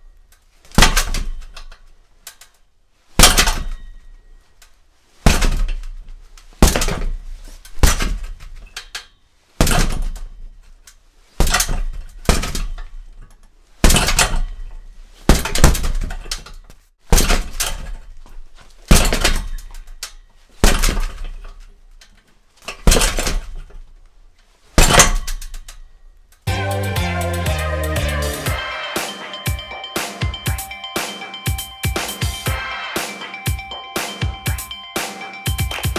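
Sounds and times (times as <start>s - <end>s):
punches on heavy bag: 0.7s - 1.7s, 3.2s - 4.0s, 5.2s - 8.6s, 9.6s - 10.4s, 11.4s - 13.1s, 13.8s - 16.5s, 17.1s - 18.1s, 18.9s - 19.9s, 20.6s - 21.5s, 22.7s - 23.8s, 24.8s - 25.6s.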